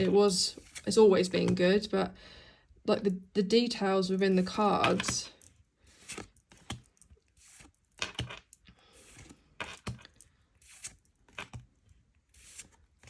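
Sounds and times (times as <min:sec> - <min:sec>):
trading cards tapping and sliding: 0:04.6 - 0:11.7, 0:12.4 - 0:12.8.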